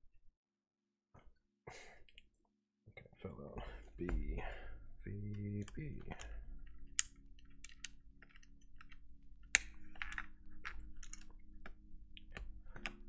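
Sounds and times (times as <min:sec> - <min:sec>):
keycaps clicking onto keyboard: 0:05.2 - 0:13.0.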